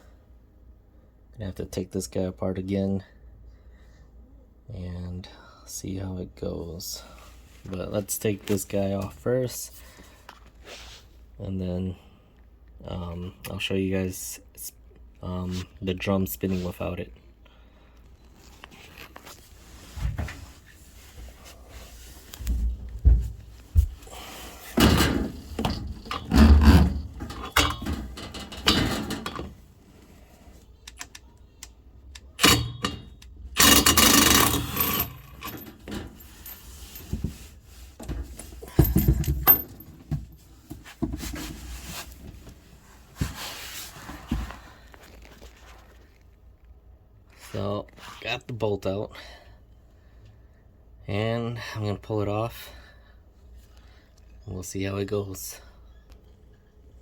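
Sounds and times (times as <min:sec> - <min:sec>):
metal tools clanking and scraping: 0:24.1 - 0:29.6, 0:32.4 - 0:40.2.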